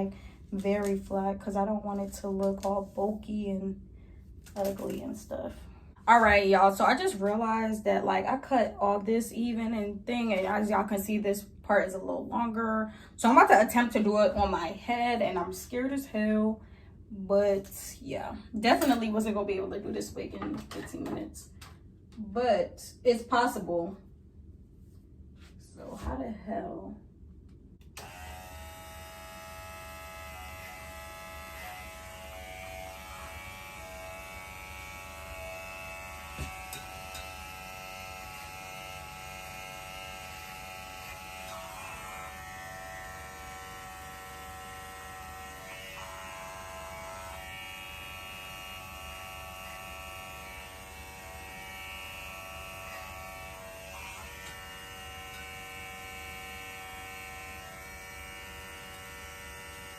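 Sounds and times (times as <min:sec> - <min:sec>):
electric hair clipper buzzing: 0:27.8 - 0:59.9.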